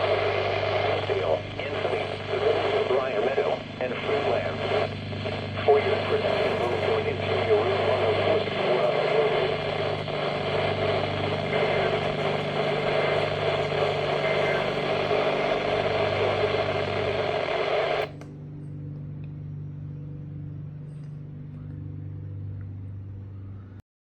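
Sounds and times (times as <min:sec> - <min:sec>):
static hiss: 0:00.0 - 0:18.2
low electrical hum: 0:00.0 - 0:23.8.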